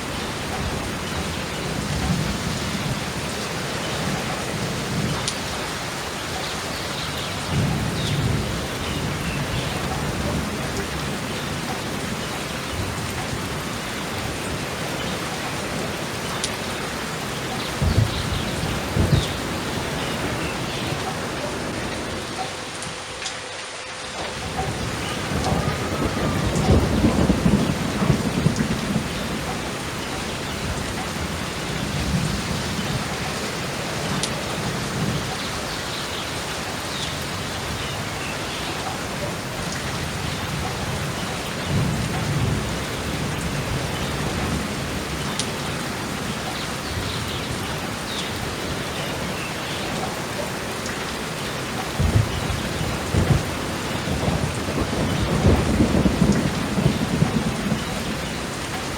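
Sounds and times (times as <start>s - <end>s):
steady rain: 0.0s - 58.9s
low thunder rumble: 7.3s - 23.1s, 24.3s - 35.7s, 36.9s - 58.9s
sharp thunder cracks: 17.4s - 22.4s, 24.4s - 33.3s, 52.0s - 58.3s.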